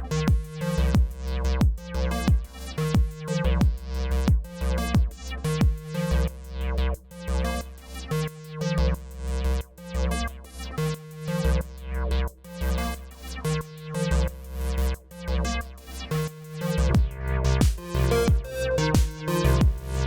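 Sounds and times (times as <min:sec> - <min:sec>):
acid techno music: 0:00.0 - 0:20.0
pulsing synth bass line: 0:00.0 - 0:20.0
drum machine beat: 0:00.3 - 0:05.9, 0:17.0 - 0:20.0.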